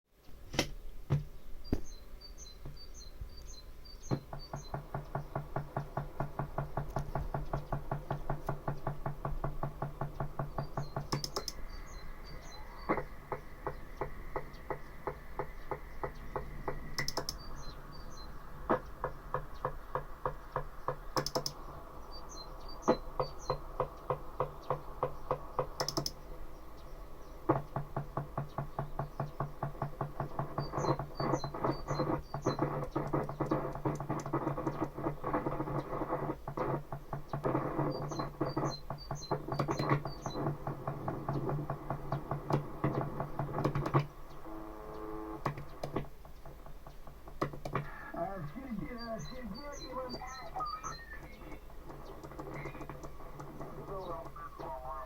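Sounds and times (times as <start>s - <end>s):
fast train of clicks: 4.0s - 55.0s
steady hum: 47.6s - 55.0s.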